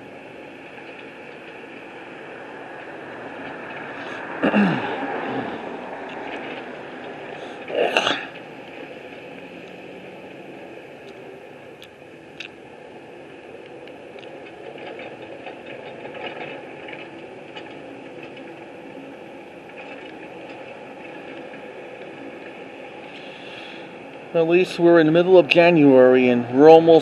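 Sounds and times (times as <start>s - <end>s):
distant engine running: 0.0s - 27.0s.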